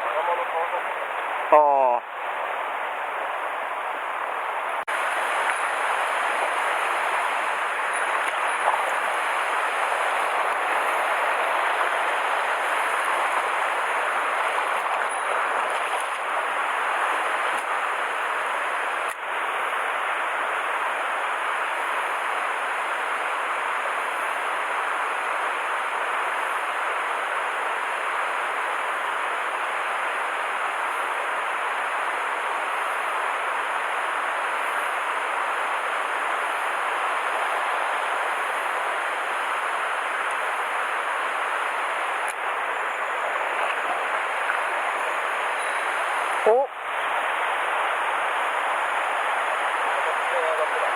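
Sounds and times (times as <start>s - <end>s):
stream water rushing: 0.2s - 50.9s.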